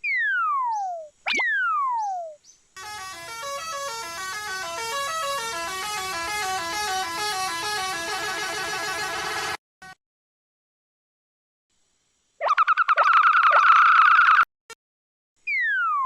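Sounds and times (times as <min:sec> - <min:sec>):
overlapping horn-like tones: 0:02.8 - 0:09.6.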